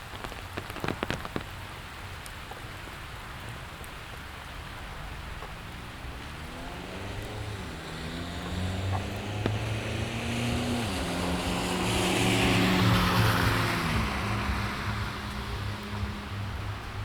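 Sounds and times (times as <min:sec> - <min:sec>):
tyres hissing on wet pavement: 0:00.0 - 0:17.0
car engine hum: 0:04.6 - 0:17.0.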